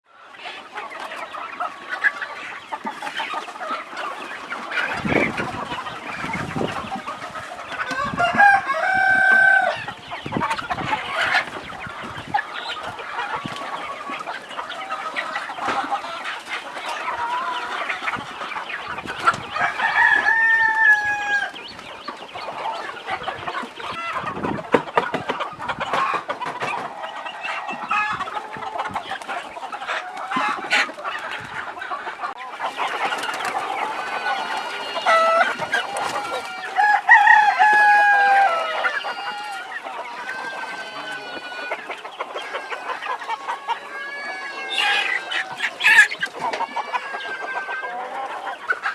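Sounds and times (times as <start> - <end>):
chickens clucking: 0.1 - 48.9
rooster crowing: 7.8 - 10.0, 19.4 - 21.6, 34.1 - 41.8.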